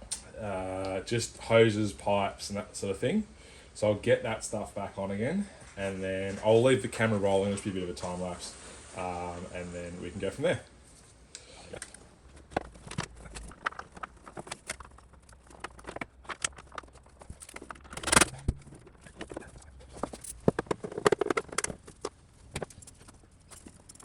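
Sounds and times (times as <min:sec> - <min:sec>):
hand tools and parts clattering: 0:11.7 - 0:24.0.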